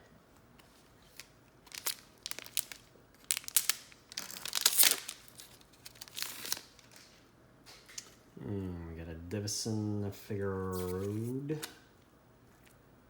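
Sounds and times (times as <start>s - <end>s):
foil wrapper crinkling: 1.0s - 7.2s.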